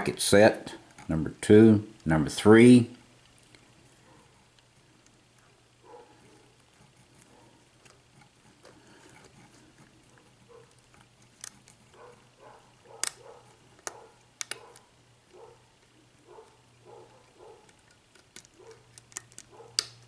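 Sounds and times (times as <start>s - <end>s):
lock pick scraping pins: 17.6s - 20.0s.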